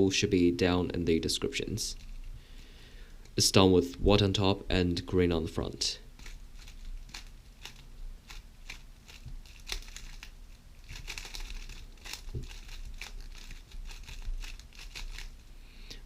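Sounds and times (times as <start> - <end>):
speedcube plastic clicks: 6.2 - 15.3.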